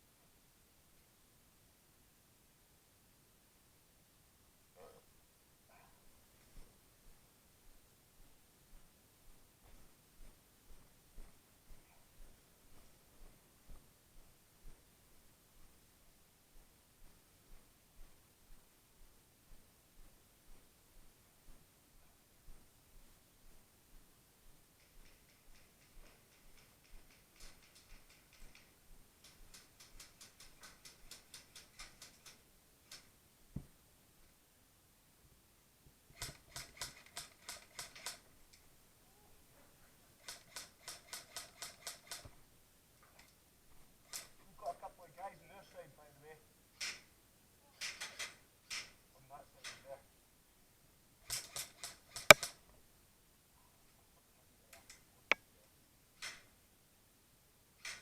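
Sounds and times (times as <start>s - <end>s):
sharp click: 51.3s - 52.6s.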